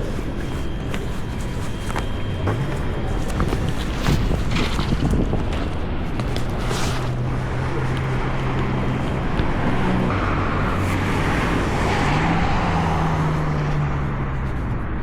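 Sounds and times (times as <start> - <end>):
vehicle engine running: 0.0 - 15.0
wind or road noise: 0.0 - 15.0.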